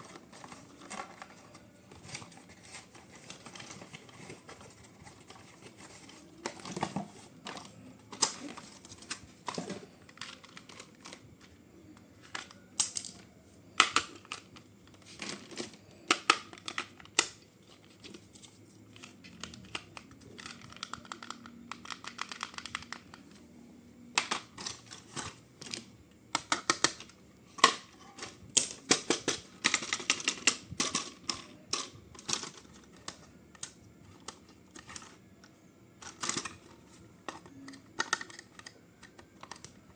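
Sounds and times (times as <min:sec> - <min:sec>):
plastic toy parts clicking: 0:12.2 - 0:17.4, 0:19.0 - 0:23.3, 0:24.2 - 0:35.2, 0:36.0 - 0:39.9.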